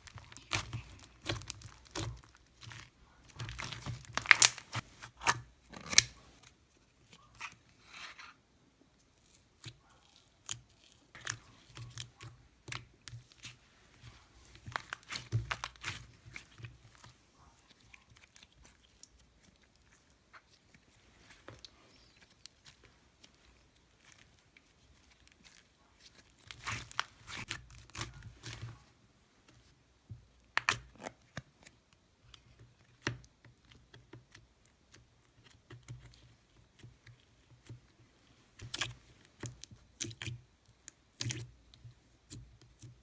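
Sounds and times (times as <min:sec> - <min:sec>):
slime squished by hand: 0:00.0 - 0:05.2.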